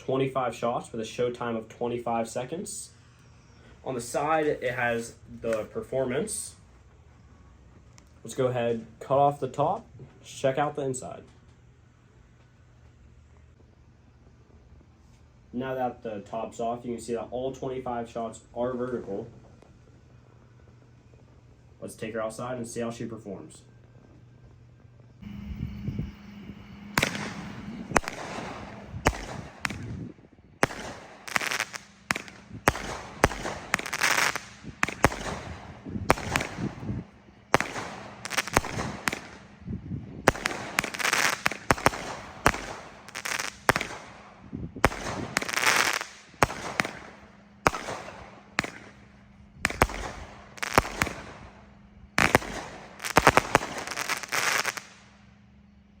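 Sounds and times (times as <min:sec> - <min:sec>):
firework cake shots banging: 0:30.6 - 0:36.9.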